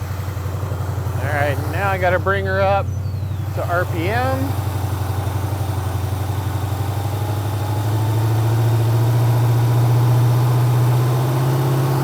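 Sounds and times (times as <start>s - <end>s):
car engine revving up: 1.1s - 2.4s, 6.9s - 12.0s.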